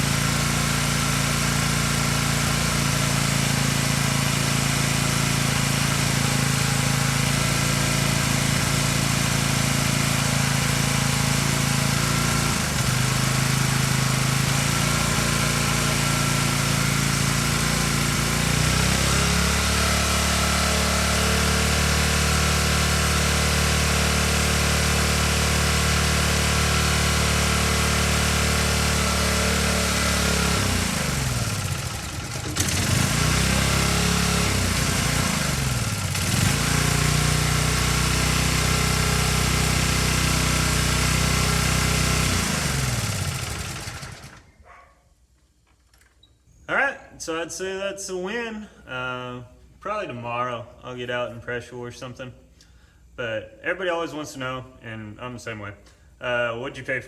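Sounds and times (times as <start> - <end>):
pressure washer engine running: 0.0 - 44.5.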